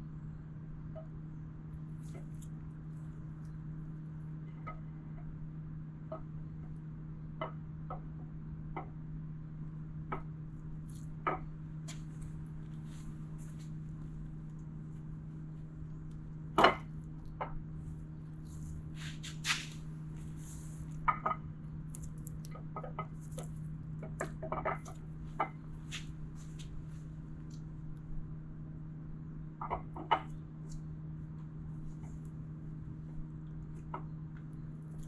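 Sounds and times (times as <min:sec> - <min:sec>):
steady low hum: 0:00.0 - 0:35.0.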